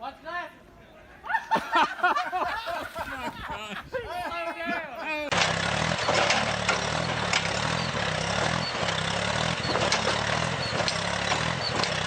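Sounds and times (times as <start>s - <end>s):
continuous hiss: 0.0s - 5.1s
engine running: 5.3s - 12.0s.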